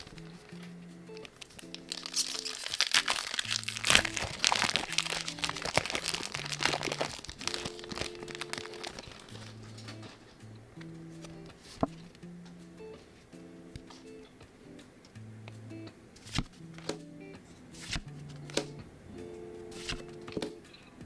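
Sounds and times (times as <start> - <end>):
soft background music: 0.0 - 21.0
foil wrapper crinkling and tearing: 1.4 - 10.2.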